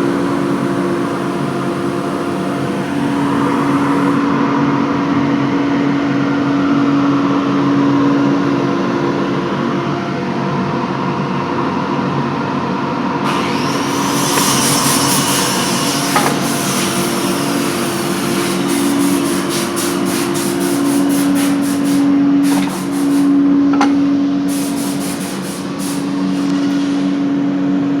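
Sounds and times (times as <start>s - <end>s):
lathe motor hum: 0.0s - 4.4s, 13.2s - 24.5s.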